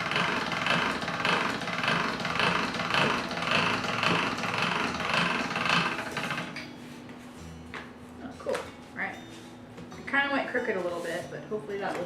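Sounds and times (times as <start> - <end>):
pasta roller grinding: 0.0 - 6.7.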